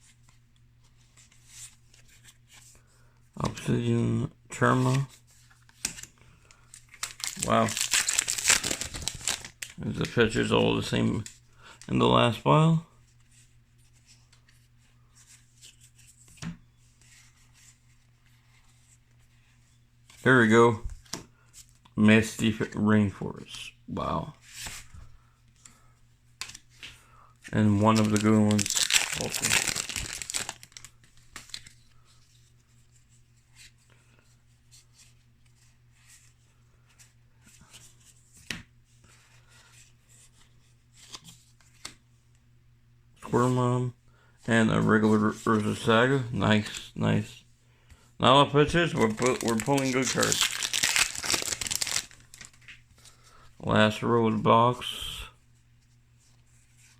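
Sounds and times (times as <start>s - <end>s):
low electrical hum: 0.0s - 56.9s
cards rustling and sliding: 4.8s - 11.3s, 24.4s - 24.9s, 26.4s - 26.9s, 27.5s - 33.8s, 34.7s - 42.0s, 48.6s - 53.3s.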